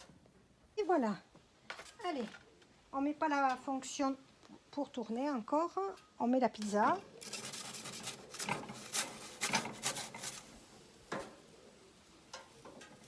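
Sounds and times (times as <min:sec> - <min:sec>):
pizza peel scraping oven floor: 0:06.6 - 0:11.4.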